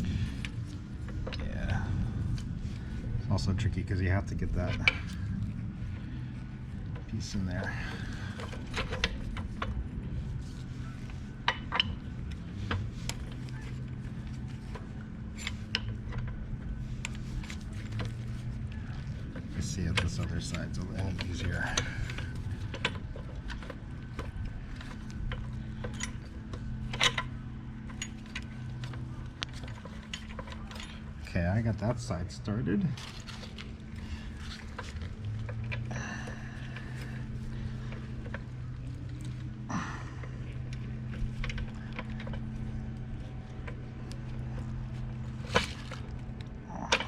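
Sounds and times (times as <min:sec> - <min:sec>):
steady low hum: 0:00.0 - 0:47.0
metal parts clattering: 0:19.2 - 0:31.3, 0:32.9 - 0:47.0.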